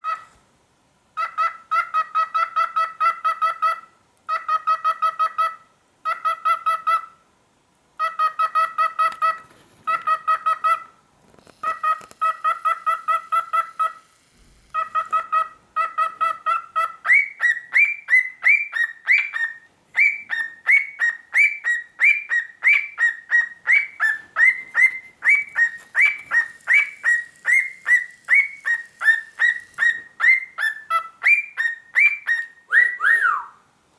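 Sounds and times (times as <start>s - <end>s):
cockatiel chattering: 11.6s - 32.6s
cockatiel whistled chirps: 14.8s - 33.6s.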